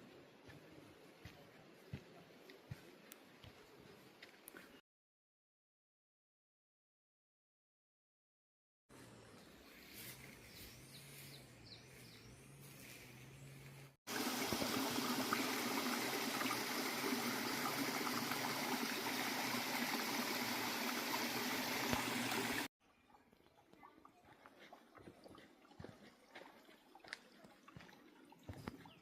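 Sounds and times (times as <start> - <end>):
stream water rushing: 14.1 - 22.7.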